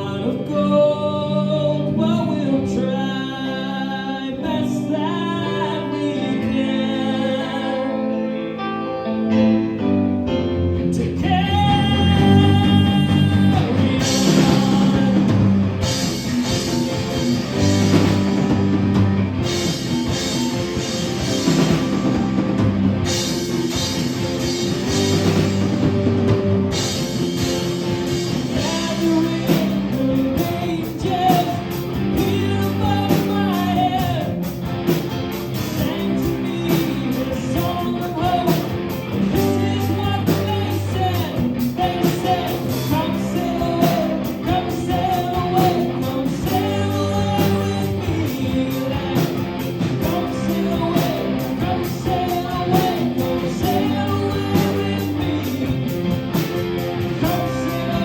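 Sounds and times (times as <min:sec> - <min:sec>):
rock band playing: 0:00.0 - 0:58.0.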